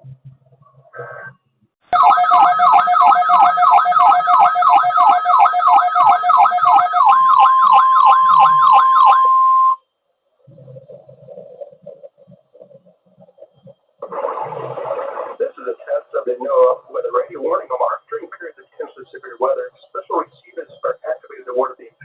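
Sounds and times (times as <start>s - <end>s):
electronic alarm siren sweeps: 1.0s - 9.8s
steady alarm tone: 1.2s - 10.8s.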